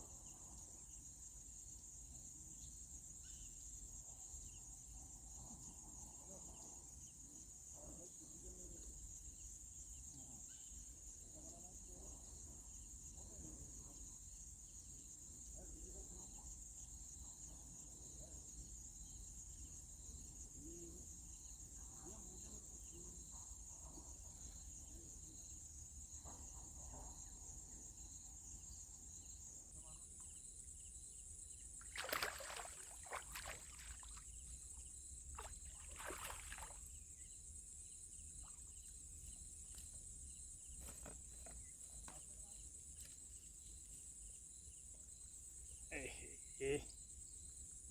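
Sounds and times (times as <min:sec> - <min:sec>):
insects chirring: 0:00.0 - 0:47.9.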